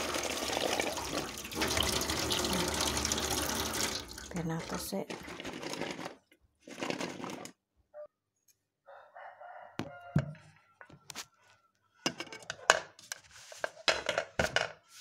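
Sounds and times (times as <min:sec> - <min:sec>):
rooster crowing: 0:08.8 - 0:11.0.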